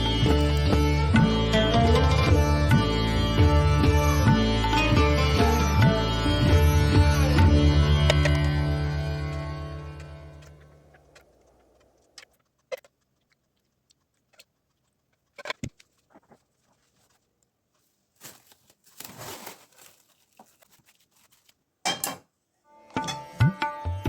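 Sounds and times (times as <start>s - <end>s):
rustling and scraping: 14.2s - 21.7s.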